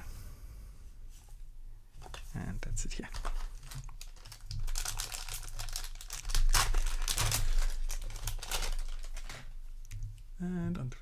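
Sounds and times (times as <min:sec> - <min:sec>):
foil wrapper crinkling and tearing: 0:03.1 - 0:09.6.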